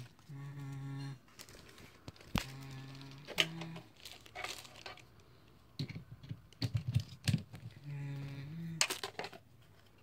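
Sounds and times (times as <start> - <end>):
packaging crinkling: 1.3 - 5.3
plastic parts clicking and tapping: 1.3 - 10.0.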